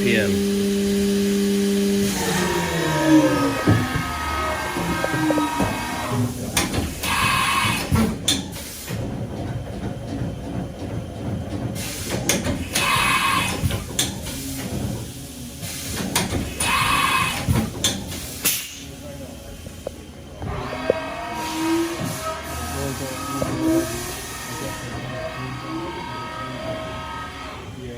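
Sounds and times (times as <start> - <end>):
spindle whine winding down: 0.0 - 7.9, 20.4 - 27.9
compressed air hisses: 14.2 - 19.0.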